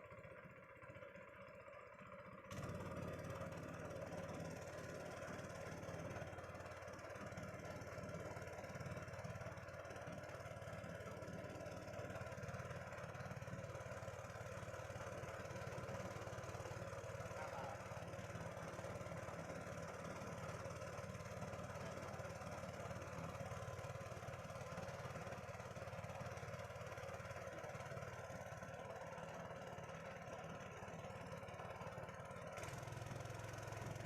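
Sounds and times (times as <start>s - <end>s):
small boat engine droning: 0.0s - 34.0s.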